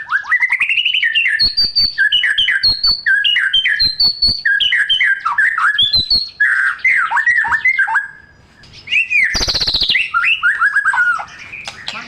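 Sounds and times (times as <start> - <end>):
bird whistling song: 0.0 - 12.0
bird harsh rattle: 9.3 - 10.0.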